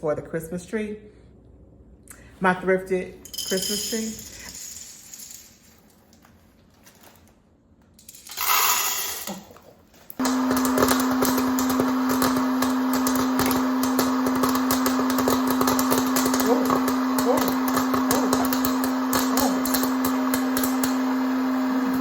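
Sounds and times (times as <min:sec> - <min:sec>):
electric motor tool humming: 0:10.2 - 0:22.0.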